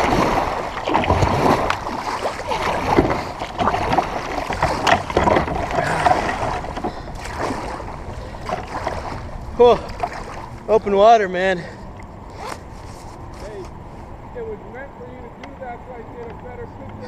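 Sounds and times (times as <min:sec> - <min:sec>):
wind rumbling on microphone: 0:00.0 - 0:11.0
water washing against hull: 0:00.0 - 0:12.1
paddle blades splashing: 0:00.0 - 0:14.2.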